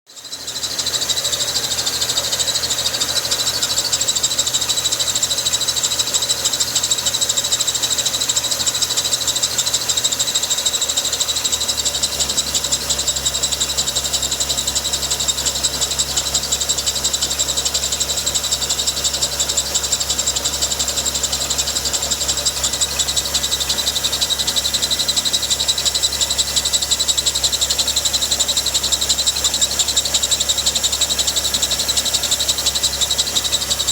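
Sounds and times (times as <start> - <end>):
car engine running: 0.1 - 33.9
high-pitched chirping squeal: 0.2 - 5.7.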